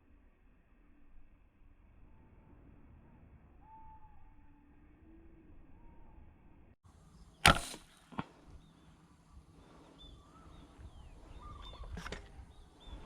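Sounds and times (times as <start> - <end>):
small birds chirping: 6.9 - 7.5, 8.3 - 13.0
gunshot cracks: 7.4 - 8.0.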